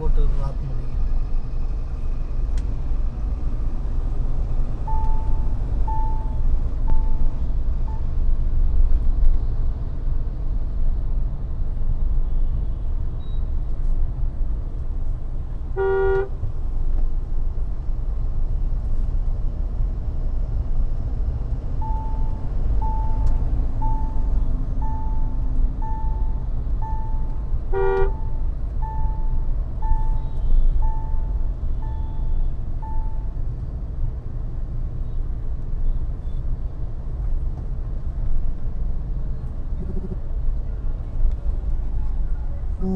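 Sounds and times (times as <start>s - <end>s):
road and engine rumble: 0.0s - 42.9s
car horn honks: 15.8s - 16.4s, 27.7s - 28.3s
repeating beep: 39.8s - 40.2s.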